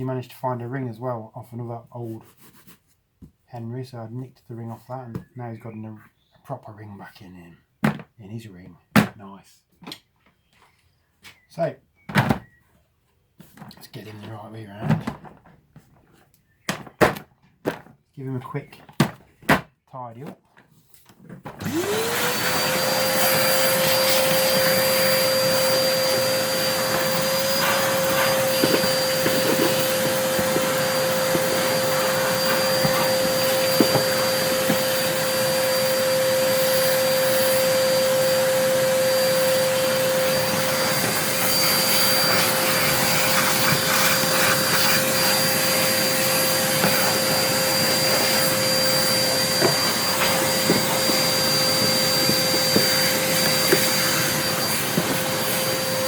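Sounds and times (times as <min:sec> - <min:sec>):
vacuum cleaner running: 0:21.5 - 0:56.0.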